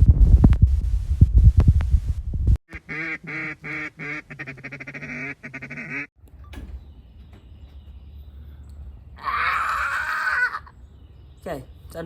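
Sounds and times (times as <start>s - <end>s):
duck quacking: 2.7s - 6.1s.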